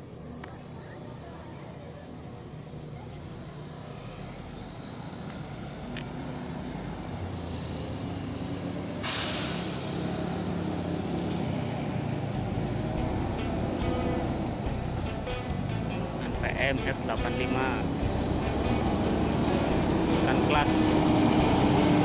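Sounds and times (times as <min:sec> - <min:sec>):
diesel bus engine running: 0:00.0 - 0:22.0
air brakes hissing: 0:08.9 - 0:10.6.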